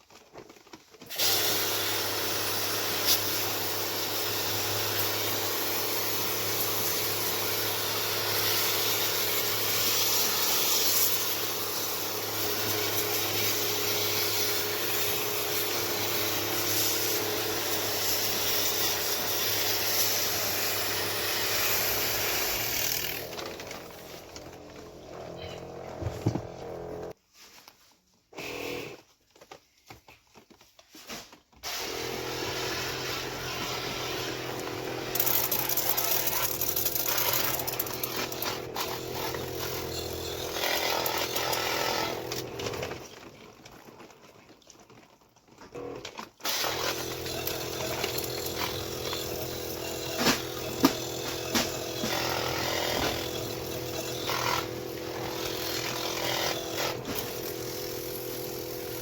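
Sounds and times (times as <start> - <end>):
motor-driven machine humming: 22.3 - 27.1.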